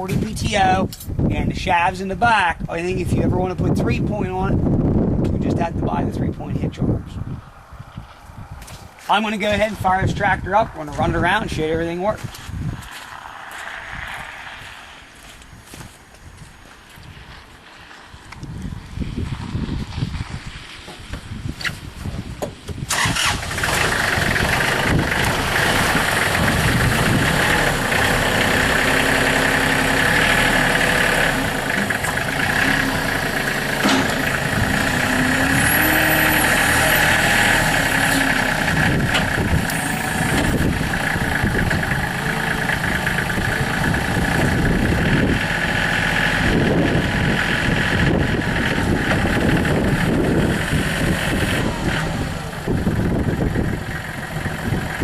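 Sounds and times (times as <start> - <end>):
diesel engine cranking and starting: 21.0 - 55.0.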